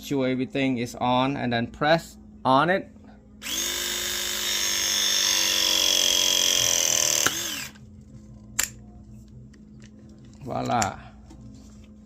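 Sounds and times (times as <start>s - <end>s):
press tool motor whine: 3.4s - 7.8s.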